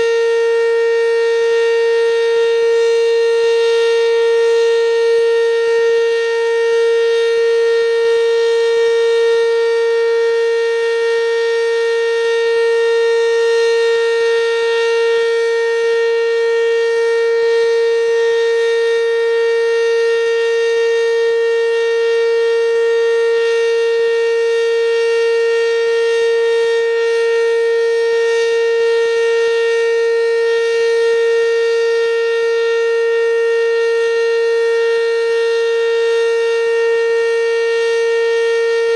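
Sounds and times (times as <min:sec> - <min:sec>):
warning siren steady tone: 0:00.0 - 0:38.9.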